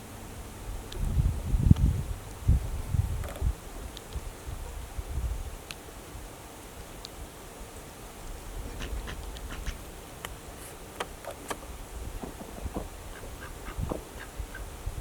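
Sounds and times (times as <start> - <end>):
poultry calling: 8.6 - 9.9, 12.2 - 14.9
light clicks and knocks: 10.9 - 14.4.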